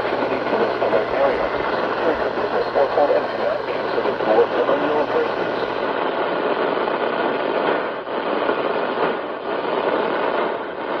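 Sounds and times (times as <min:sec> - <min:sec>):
radio static hiss: 0:00.0 - 0:06.0.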